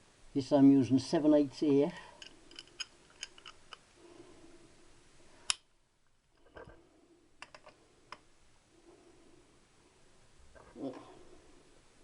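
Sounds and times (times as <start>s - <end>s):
metallic clicks of socket and wrench: 2.2s - 3.8s.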